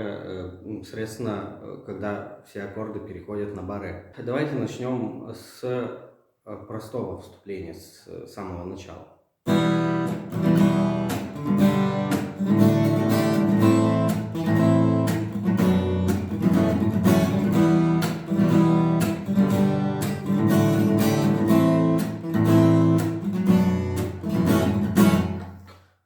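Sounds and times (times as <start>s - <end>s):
acoustic guitar strumming: 9.5s - 25.7s.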